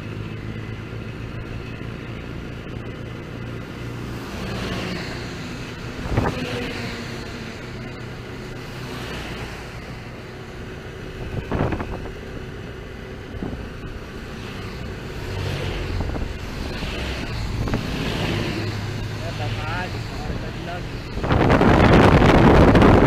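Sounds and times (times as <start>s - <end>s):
motorcycle engine running: 0.0s - 23.0s
rain and rushing water: 13.4s - 23.0s.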